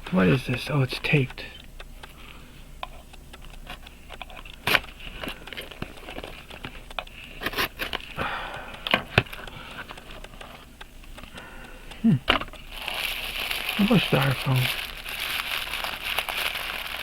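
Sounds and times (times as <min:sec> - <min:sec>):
packaging crinkling and crackling: 0:03.0 - 0:11.4, 0:12.3 - 0:17.0.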